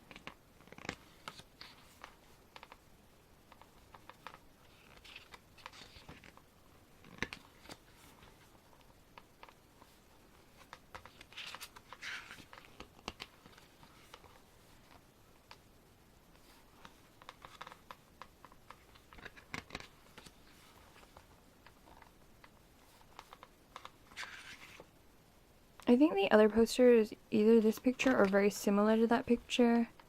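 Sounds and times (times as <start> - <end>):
pages turning: 0.1 - 2.8, 3.5 - 6.4, 7.0 - 15.6, 16.3 - 24.9.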